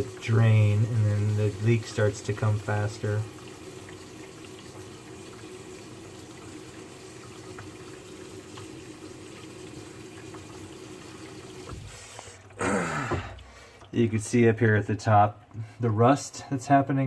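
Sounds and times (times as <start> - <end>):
tap water running into sink: 0.0 - 14.3.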